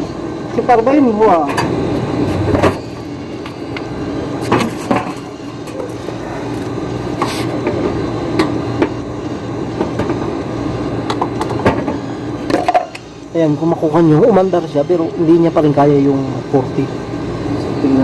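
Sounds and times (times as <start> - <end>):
compressor low hum: 0.0 - 18.0
scattered clicks and knocks: 11.0 - 13.0.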